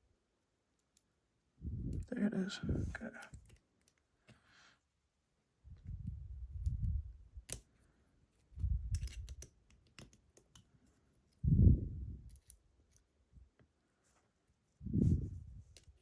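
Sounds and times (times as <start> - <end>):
lock pick metallic clicks and scrapes: 6.6 - 7.8, 8.6 - 10.7, 12.2 - 13.1.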